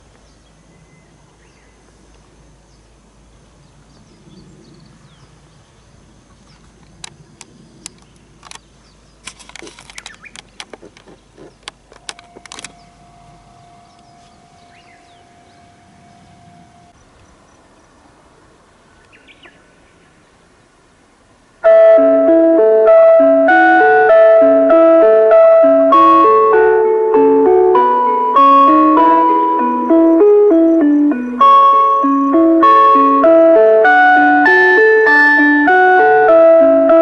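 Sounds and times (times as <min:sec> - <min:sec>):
sharp clicks: 0:07.0 - 0:12.9
steady single tone: 0:12.0 - 0:17.0, 0:21.6 - 0:37.0
faint bird chirps: 0:12.2 - 0:18.0.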